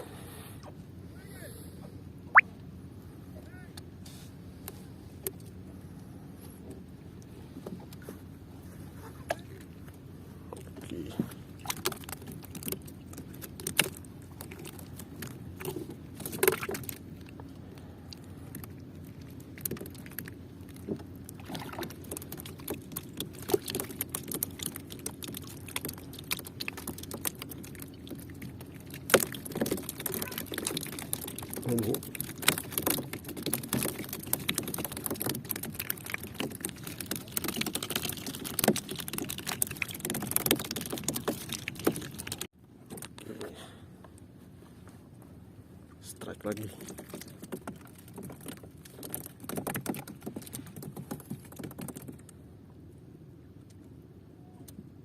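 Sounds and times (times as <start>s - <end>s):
steady low hum: 0.0s - 37.4s.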